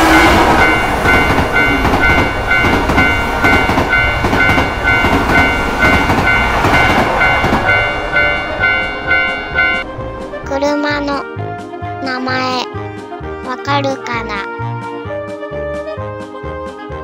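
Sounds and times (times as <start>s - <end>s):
train wheels clattering: 0.0s - 9.8s
level crossing alarm ringing: 0.0s - 9.9s.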